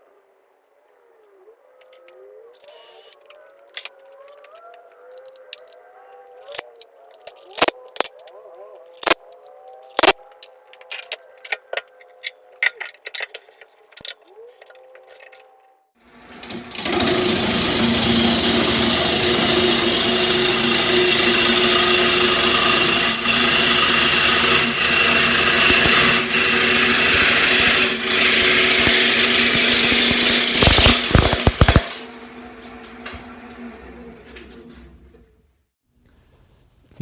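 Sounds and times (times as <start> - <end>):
gouge cutting wood on lathe: 16.1 - 33.9
wood lathe humming: 16.1 - 34.5.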